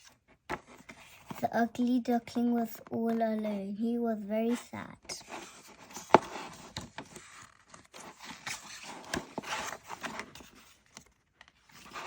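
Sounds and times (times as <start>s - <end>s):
handling noise rustling and clicks: 5.2s - 12.0s.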